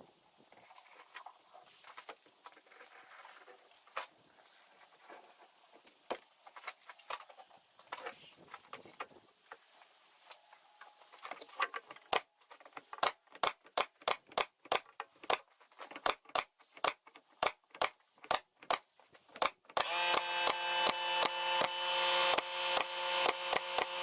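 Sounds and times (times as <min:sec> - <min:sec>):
hammer striking nails: 0:19.4 - 0:24.0.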